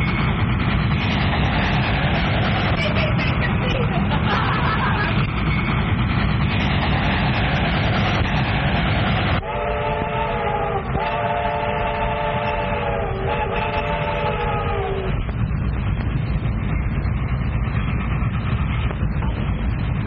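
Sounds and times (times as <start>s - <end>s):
train rumbling: 0.0s - 20.0s
train whistle blasts: 9.4s - 15.1s.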